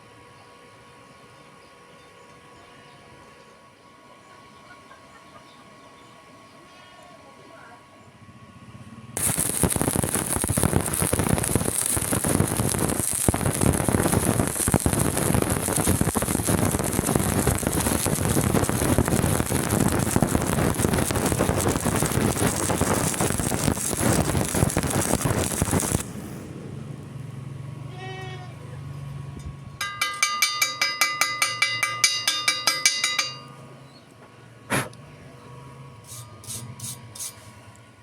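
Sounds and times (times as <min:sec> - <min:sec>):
welding arc crackling: 0:09.2 - 0:26.5.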